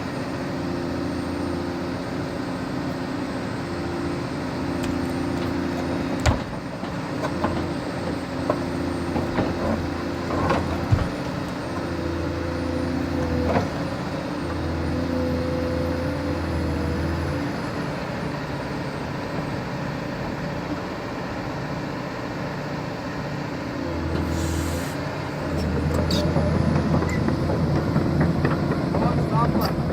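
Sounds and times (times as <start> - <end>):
excavator diesel engine running: 0.0 - 29.9
hydraulic whine: 23.9 - 29.8
short hiss: 24.3 - 25.0.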